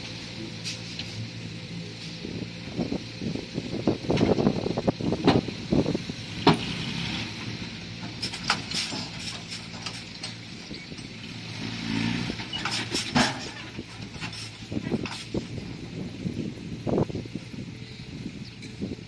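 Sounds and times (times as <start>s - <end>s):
bulldozer diesel engine running: 0.0s - 19.0s
steel tracks clanking: 12.2s - 15.6s.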